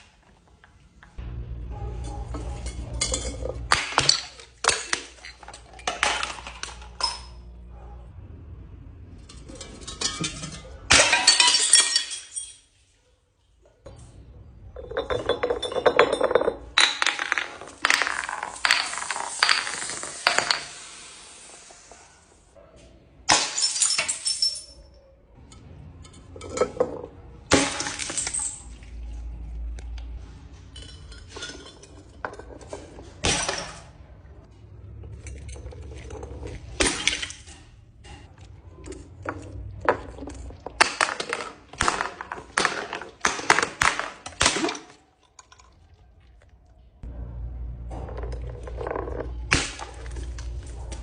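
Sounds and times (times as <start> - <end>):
glass crushing and breaking: 2.6 - 7.4, 9.3 - 12.7, 14.8 - 20.7, 23.3 - 24.8, 26.1 - 29.0, 30.8 - 33.9, 38.9 - 45.7.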